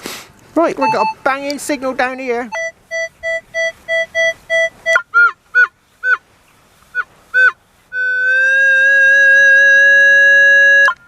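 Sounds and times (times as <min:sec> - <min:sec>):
metal detector beeping: 0:00.8 - 0:01.4, 0:02.5 - 0:05.3.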